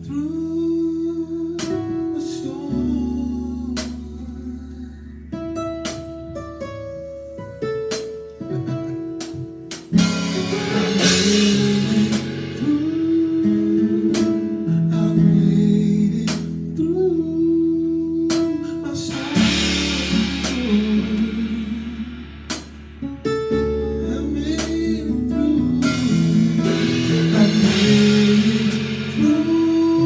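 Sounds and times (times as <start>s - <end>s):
guitar: 0.0s - 30.0s
sharp beats: 5.8s - 6.4s, 7.9s - 8.3s, 9.2s - 14.5s, 19.1s - 25.0s, 25.6s - 30.0s
person singing: 10.0s - 22.5s, 23.2s - 30.0s.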